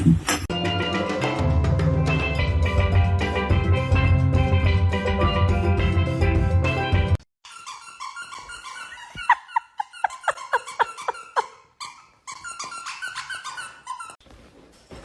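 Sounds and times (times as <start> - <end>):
dog whining in high squeals: 7.5 - 14.2
dog yelping: 7.5 - 14.2.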